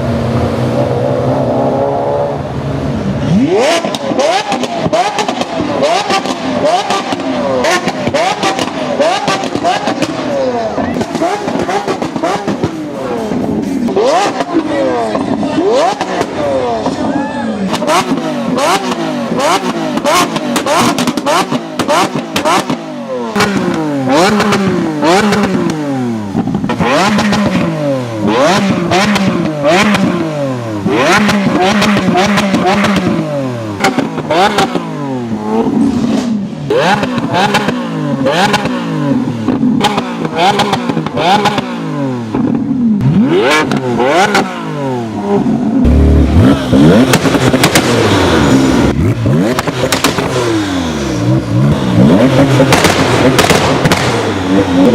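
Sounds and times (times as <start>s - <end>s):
deep heavy engine rumble: 0.0s - 4.9s, 41.9s - 54.9s
supercar engine revving: 0.0s - 54.9s
exhaust cracks and pops: 19.6s - 22.8s, 45.8s - 48.2s, 49.3s - 50.4s, 51.6s - 54.9s.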